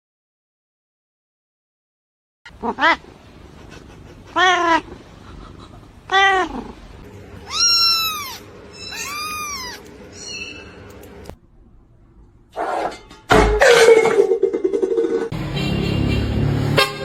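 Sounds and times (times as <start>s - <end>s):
cat meowing: 2.5s - 3.0s, 4.3s - 4.9s, 6.1s - 6.8s, 7.4s - 10.6s.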